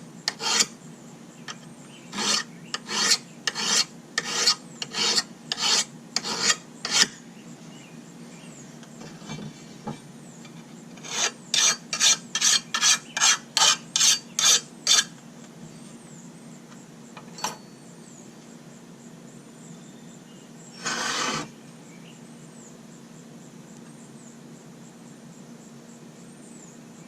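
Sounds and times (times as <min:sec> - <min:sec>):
metal file rasping on blade: 0:00.3 - 0:00.7, 0:02.1 - 0:07.2, 0:11.0 - 0:15.1, 0:20.8 - 0:21.5.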